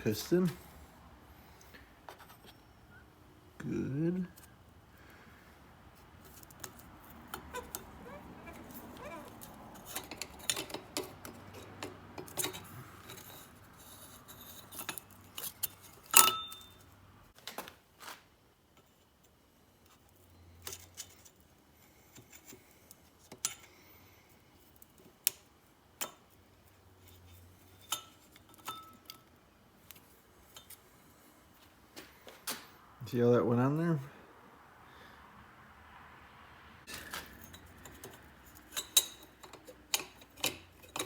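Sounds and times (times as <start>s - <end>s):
metallic clinks of hand tools: 14.5s - 16.8s
sharp ringing metal clink: 16.1s - 16.8s.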